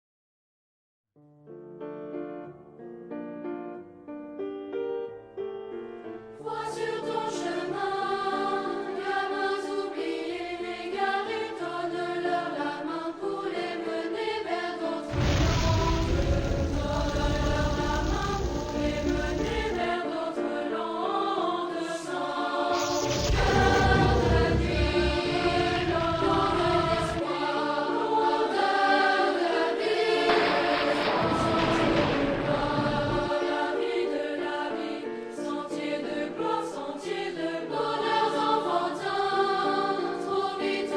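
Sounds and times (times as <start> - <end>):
choir singing held chords: 6.4 - 40.9
low pulsing rumble: 23.1 - 27.2.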